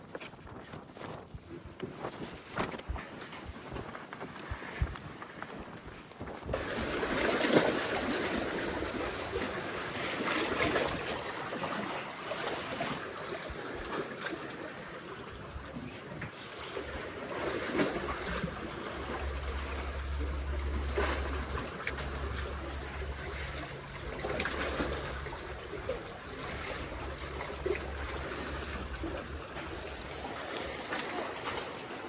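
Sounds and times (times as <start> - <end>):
wind rumble on microphone: 0.0 - 12.0, 15.2 - 32.0
sea waves sloshing among concrete blocks: 0.0 - 32.0.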